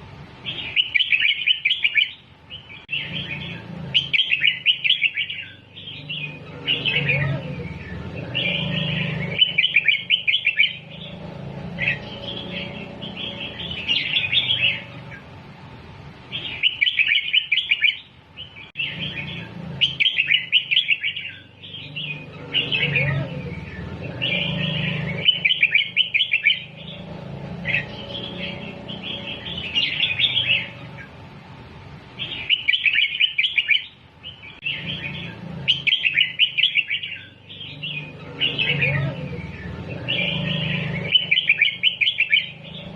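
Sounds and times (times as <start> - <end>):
bird singing chirpy phrases: 0.4 - 15.4, 16.2 - 31.2, 32.0 - 42.9.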